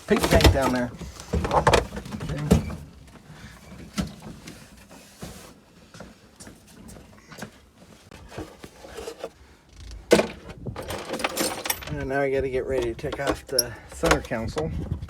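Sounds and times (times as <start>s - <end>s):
hands handling parts: 3.8s - 14.7s.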